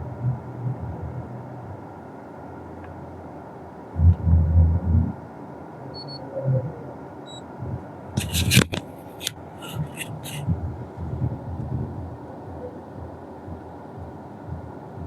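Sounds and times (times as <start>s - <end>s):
dull low rumbling bump: 0.0s - 1.8s, 4.0s - 5.3s, 7.6s - 8.6s, 9.7s - 15.0s
sharp clicks and rustles: 8.2s - 10.5s.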